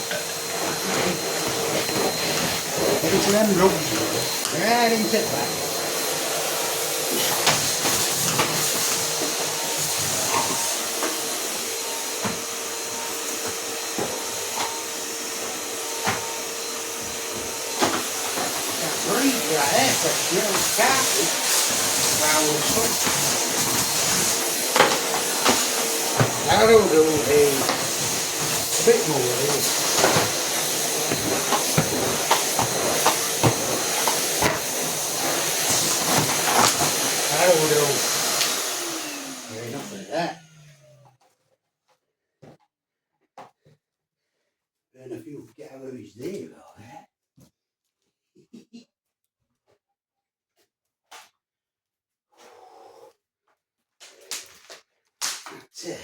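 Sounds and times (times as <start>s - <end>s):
vacuum cleaner running: 0.0s - 41.2s.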